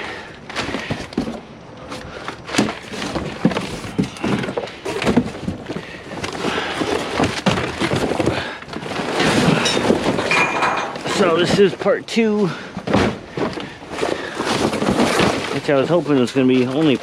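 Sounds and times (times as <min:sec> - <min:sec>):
scrap clattering in a dumpster: 0:00.0 - 0:17.0
rustling: 0:00.5 - 0:11.8, 0:12.5 - 0:17.0.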